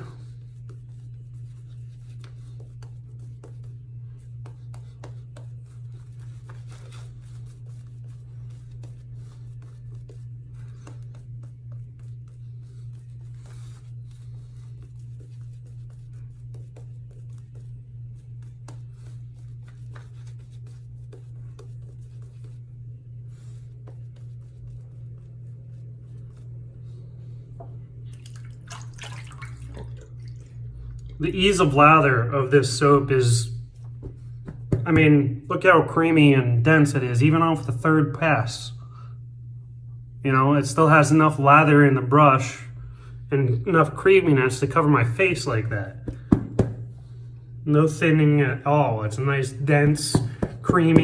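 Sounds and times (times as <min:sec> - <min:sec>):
shaving brush scratching: 0:00.0 - 0:26.5
steady low hum: 0:00.0 - 0:51.0.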